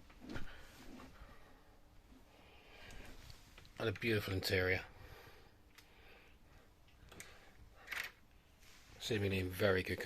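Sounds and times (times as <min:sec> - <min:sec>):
click or breath noise: 0:02.7 - 0:03.4, 0:07.1 - 0:08.2.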